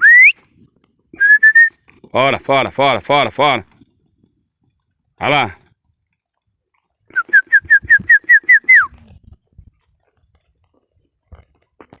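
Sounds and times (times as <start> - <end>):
person whistling: 0.0 - 0.4, 1.2 - 1.7, 7.1 - 8.9.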